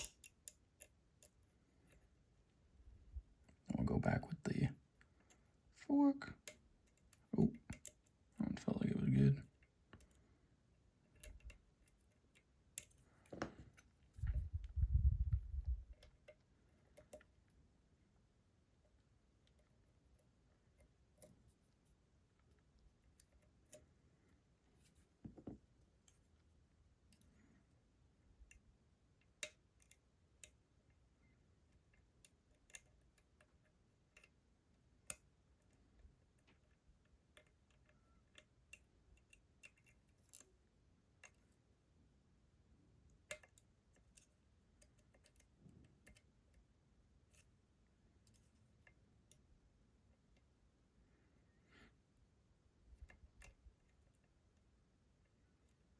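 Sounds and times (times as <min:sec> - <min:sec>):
lock-picking tools clicking: 0:00.0 - 0:02.2, 0:06.4 - 0:08.4, 0:11.0 - 0:14.5, 0:15.6 - 0:17.4, 0:29.2 - 0:30.6, 0:31.7 - 0:34.4, 0:35.0 - 0:40.6, 0:43.1 - 0:46.4.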